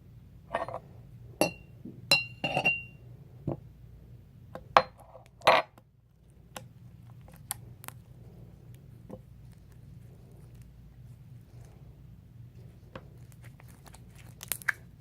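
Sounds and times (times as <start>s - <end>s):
spoon clinking against glass cup: 1.4s - 3.0s.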